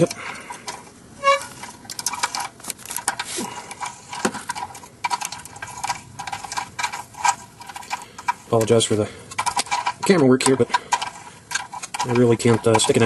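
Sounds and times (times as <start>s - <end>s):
wrench clicking on metal nuts: 4.5s - 13.0s.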